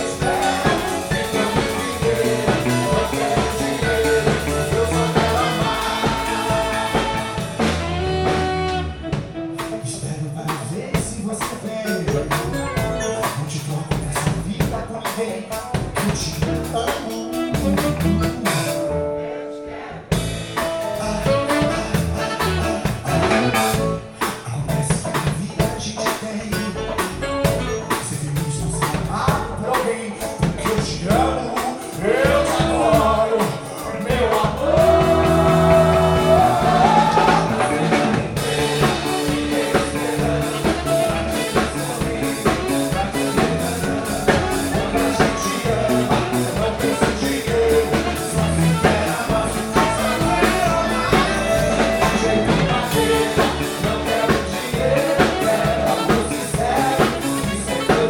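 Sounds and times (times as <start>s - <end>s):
drum kit beat: 0.0s - 9.9s, 10.5s - 19.0s, 20.1s - 58.0s
band music with singer: 0.0s - 58.0s
bass guitar: 0.0s - 58.0s.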